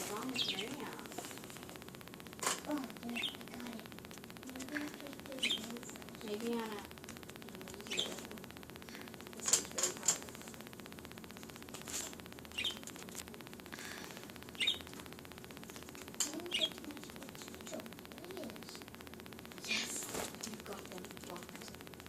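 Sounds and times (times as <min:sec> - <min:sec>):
sharp clicks: 0:00.0 - 0:22.0
budgerigar chirping: 0:12.5 - 0:12.8, 0:14.6 - 0:14.9.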